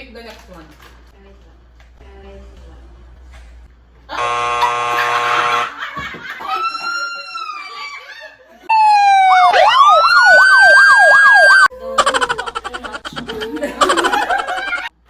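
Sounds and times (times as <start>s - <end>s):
buzzer-like tone: 4.2s - 5.8s
siren effect wailing: 8.7s - 11.7s.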